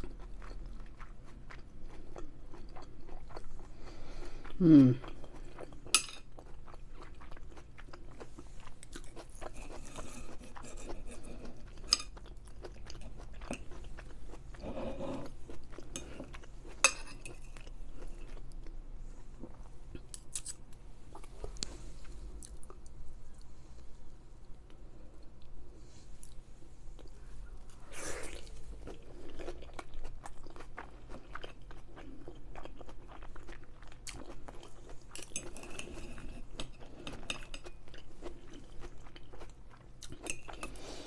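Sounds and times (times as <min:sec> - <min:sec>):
close chewing: 0:00.0 - 0:18.7, 0:27.0 - 0:41.0.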